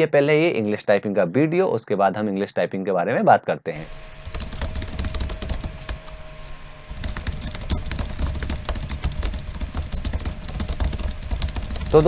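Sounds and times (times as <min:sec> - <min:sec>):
keyboard typing: 0:03.8 - 0:12.0.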